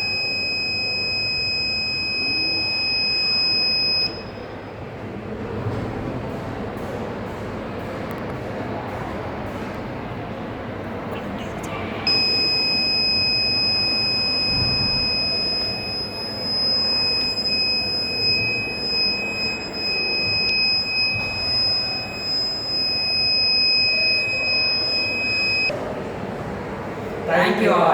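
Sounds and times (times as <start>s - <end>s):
high-pitched buzzer tone: 0.0s - 4.5s, 12.1s - 25.7s.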